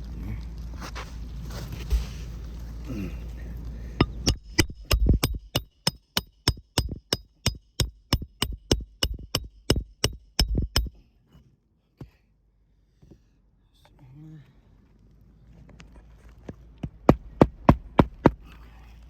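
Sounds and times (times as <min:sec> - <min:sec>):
hammer striking metal: 0:04.0 - 0:11.0.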